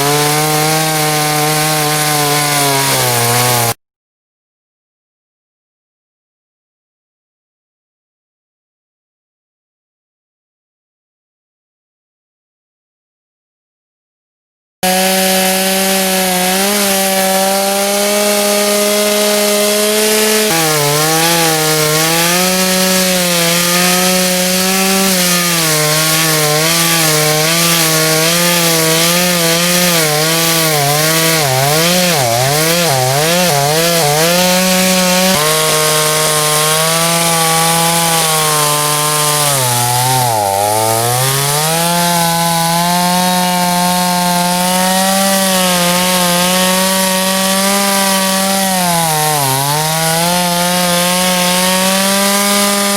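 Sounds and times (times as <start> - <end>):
chainsaw cutting under load: 0.0 - 3.8, 14.8 - 52.9.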